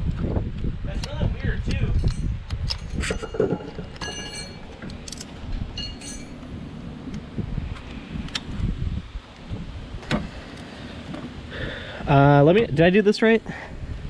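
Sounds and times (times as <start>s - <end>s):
wind rumbling on microphone: 0.0s - 12.9s, 13.5s - 14.0s
tools and metal parts clinking: 1.9s - 6.4s.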